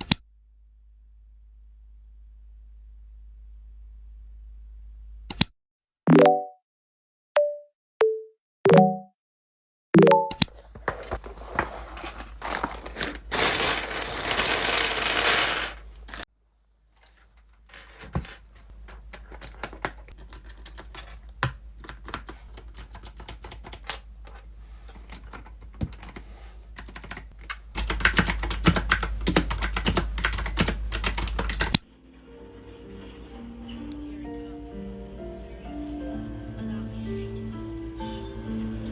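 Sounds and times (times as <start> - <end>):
fast typing on keyboard: 19.1 - 23.9, 25.0 - 31.8.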